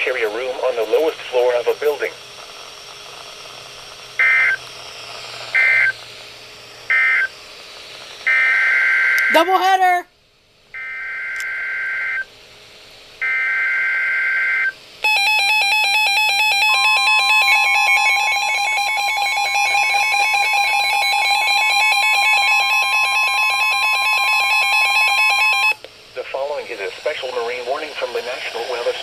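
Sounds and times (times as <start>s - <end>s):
steady attention tone: 0.0s - 7.6s, 13.2s - 29.0s
screeching digital data bursts: 4.2s - 6.0s, 6.9s - 7.3s, 8.2s - 9.5s, 13.2s - 29.0s.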